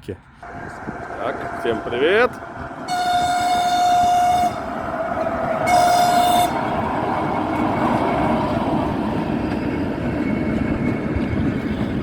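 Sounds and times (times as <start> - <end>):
train running rumble: 0.4 - 12.0
train horn blast: 2.9 - 4.7, 5.6 - 6.7.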